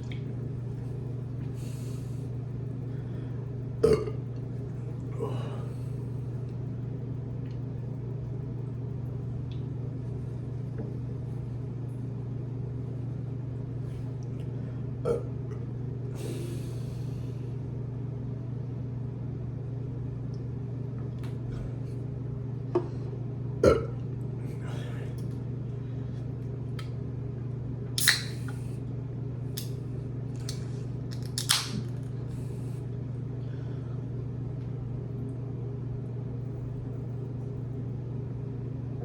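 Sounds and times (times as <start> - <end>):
low hum: 0.0 - 39.0
person burping: 3.8 - 4.2, 15.0 - 15.6, 23.6 - 24.0.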